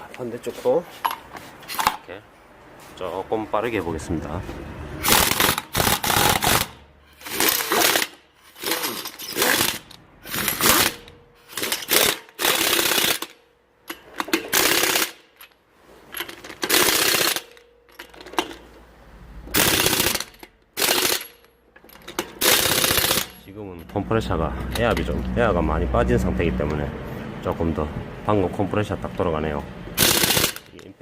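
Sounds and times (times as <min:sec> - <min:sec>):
pneumatic impact wrench bursts: 0:05.0 - 0:13.4, 0:14.0 - 0:15.4, 0:16.2 - 0:17.6, 0:19.5 - 0:23.4, 0:30.0 - 0:30.8.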